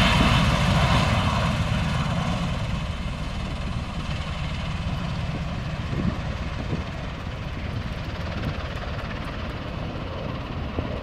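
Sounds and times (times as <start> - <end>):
aircraft rotor rumble: 0.0 - 11.0.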